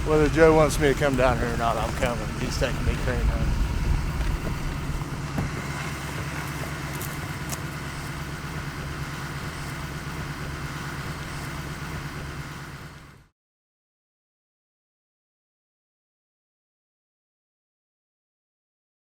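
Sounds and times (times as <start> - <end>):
vehicle engine humming: 0.0 - 13.3.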